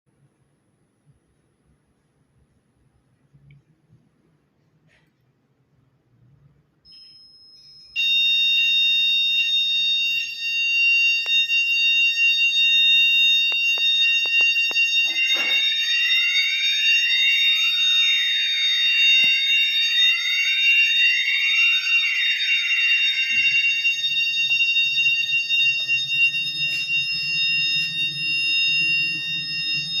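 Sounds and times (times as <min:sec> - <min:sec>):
shrill fire alarm tone: 0:06.8 - 0:30.0
siren sweeping up and down: 0:08.0 - 0:30.0.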